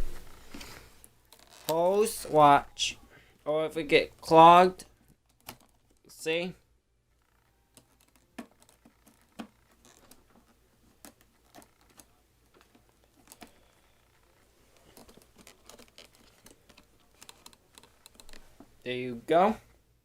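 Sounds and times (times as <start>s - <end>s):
plastic hose clicks and rustles: 0.5s - 2.0s, 4.8s - 6.1s, 7.3s - 18.7s.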